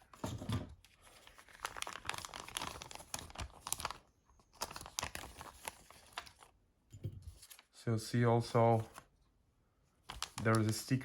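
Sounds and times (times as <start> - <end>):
plastic packaging crinkling: 0.8 - 6.5, 10.0 - 11.0.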